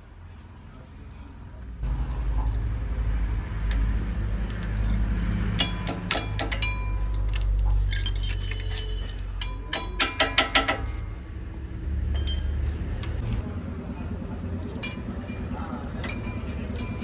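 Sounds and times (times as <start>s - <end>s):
metal clips clinking: 5.6s - 11.0s.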